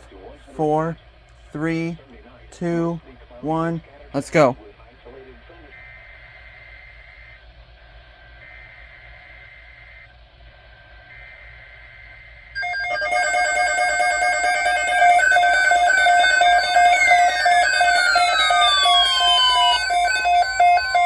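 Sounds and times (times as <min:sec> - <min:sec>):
electronic alert tones beeping: 0:12.6 - 0:21.0
falling tone glides: 0:12.6 - 0:21.0.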